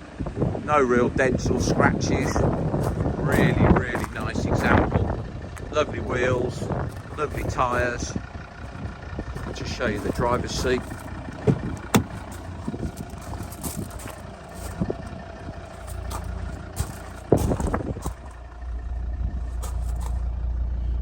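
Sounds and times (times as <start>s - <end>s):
steady low hum: 0.0s - 21.0s
heavy thump: 9.4s - 14.1s
car door clicks and knocks: 11.4s - 12.3s.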